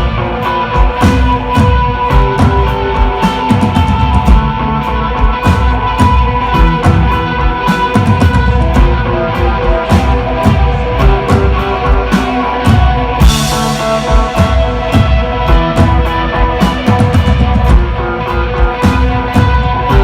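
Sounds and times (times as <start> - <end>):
drum kit: 0.0 - 20.0
electric guitar chords: 0.0 - 20.0.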